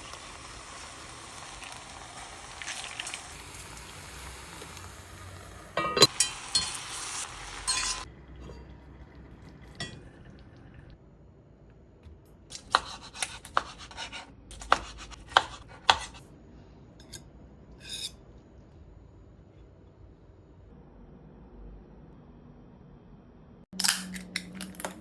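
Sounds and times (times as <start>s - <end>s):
utensils clinking against cookware: 5.8s - 8.7s.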